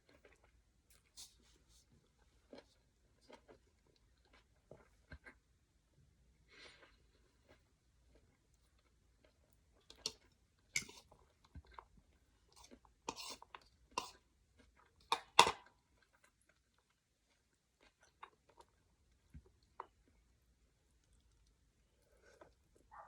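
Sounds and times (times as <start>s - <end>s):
chewing and crunching: 0.0s - 5.5s, 6.6s - 23.0s.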